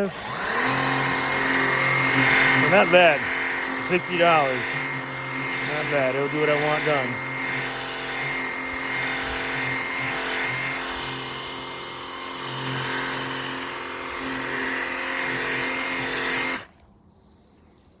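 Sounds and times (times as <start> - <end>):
water jet hissing: 0.0 - 7.2
pressure washer motor hum: 0.0 - 16.7.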